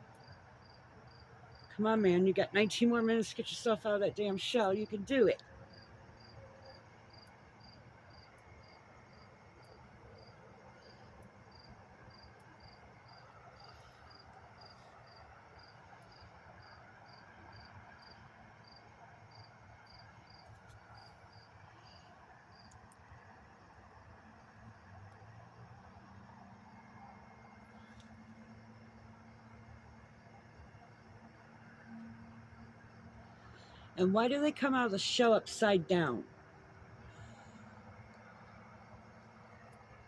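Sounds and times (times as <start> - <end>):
faint low hum: 0.0 - 40.0
cricket chirping: 5.6 - 22.8.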